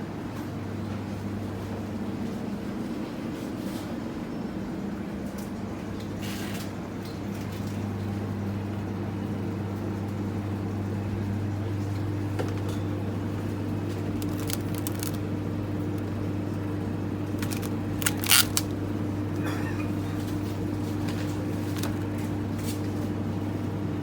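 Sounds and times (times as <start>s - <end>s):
low mechanical hum: 0.0s - 24.0s.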